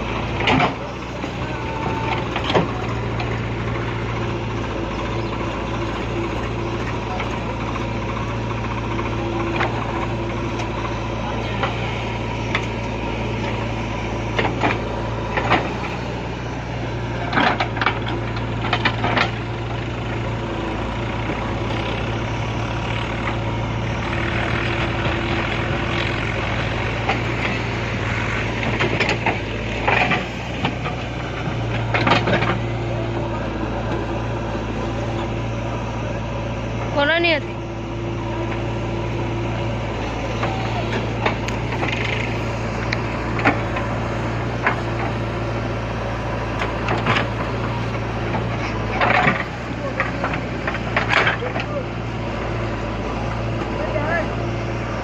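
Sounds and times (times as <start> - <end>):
heavy diesel engine running: 0.0 - 55.0
knocks and clanks: 28.5 - 32.7, 48.3 - 51.7.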